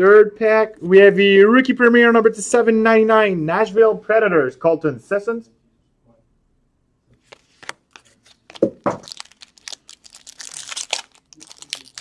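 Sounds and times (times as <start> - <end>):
cards being handled: 7.2 - 9.6
foil wrapper tearing and crinkling: 7.9 - 12.0.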